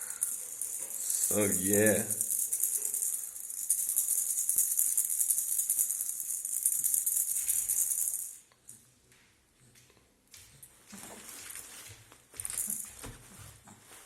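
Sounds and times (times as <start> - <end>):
baby rattle shaking: 0.0 - 8.4, 12.4 - 13.1.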